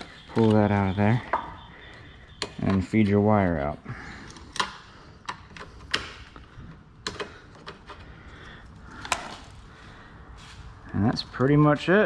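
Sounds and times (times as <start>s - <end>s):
sharp clicks and knocks: 4.2s - 8.1s.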